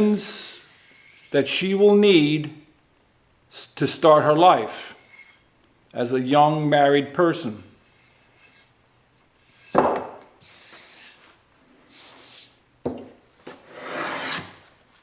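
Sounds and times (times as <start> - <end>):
hand plane scraping wood: 13.5 - 15.0.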